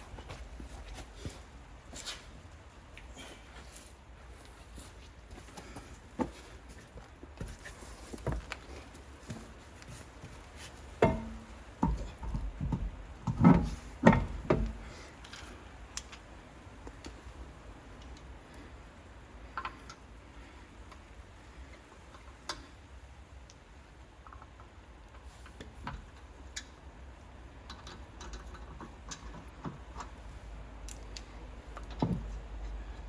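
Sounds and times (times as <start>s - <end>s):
tools and parts clunking: 11.0s - 15.5s.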